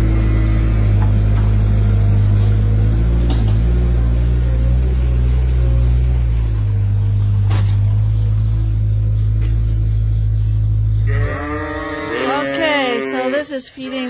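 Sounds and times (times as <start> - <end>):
farm vehicle engine humming: 0.0 - 14.0
sheep bleating: 11.0 - 13.6.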